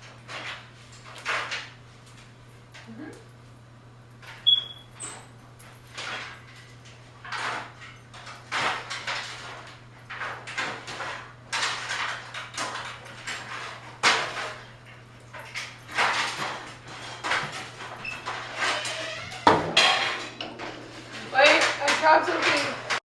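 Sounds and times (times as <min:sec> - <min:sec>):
cupboard doors and utensils handled: 0:04.2 - 0:23.0.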